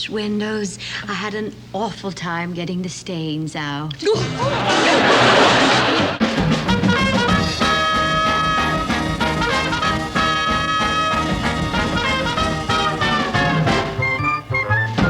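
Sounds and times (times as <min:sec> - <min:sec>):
swing big band music: 0:04.6 - 0:15.0.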